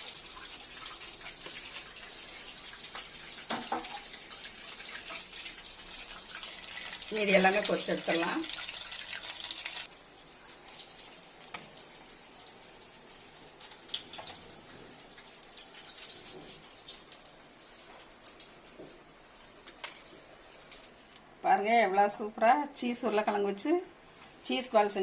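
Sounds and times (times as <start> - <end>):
food deep-frying in hot oil: 0.0 - 21.0
oil crackles and pops: 8.6 - 14.6, 15.2 - 20.9.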